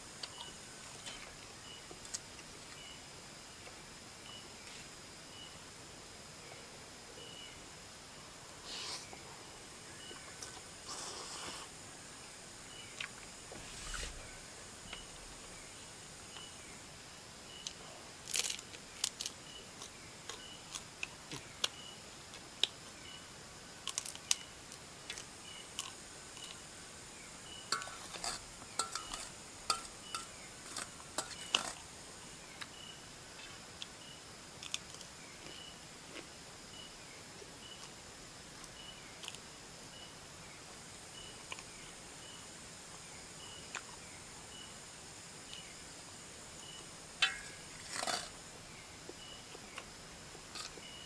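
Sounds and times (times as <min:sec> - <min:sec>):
insects chirping: 0:00.0 - 0:20.8, 0:22.8 - 0:37.9, 0:38.7 - 0:51.0
utensils clinking against cookware: 0:27.7 - 0:31.8, 0:47.2 - 0:48.3.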